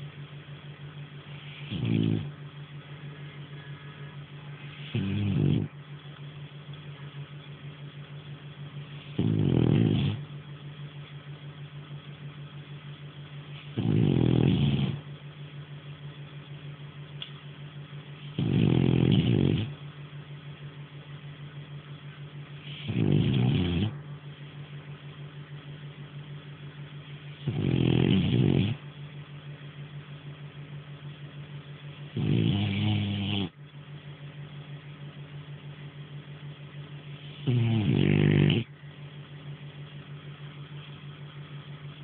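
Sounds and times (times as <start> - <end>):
low steady hum: 0.0 - 42.0
dog snoring: 1.3 - 2.4, 4.6 - 5.8, 8.8 - 10.4, 13.5 - 15.1, 18.2 - 19.8, 22.5 - 24.0, 27.3 - 28.9, 32.1 - 33.6, 37.1 - 38.8.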